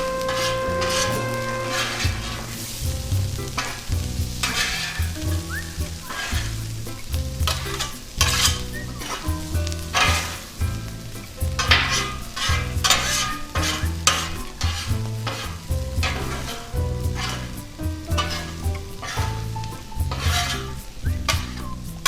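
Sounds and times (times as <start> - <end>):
corn sizzling on a griddle: 0.0 - 21.8
background music with bass: 0.0 - 22.0
metal spatula scraping: 7.6 - 19.5.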